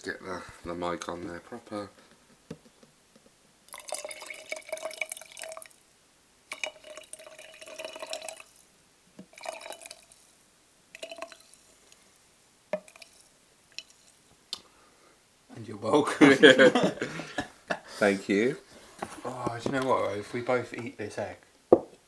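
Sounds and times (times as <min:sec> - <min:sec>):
drink pouring into cups: 0:03.7 - 0:05.8, 0:06.5 - 0:10.3, 0:10.9 - 0:12.1, 0:12.8 - 0:14.2.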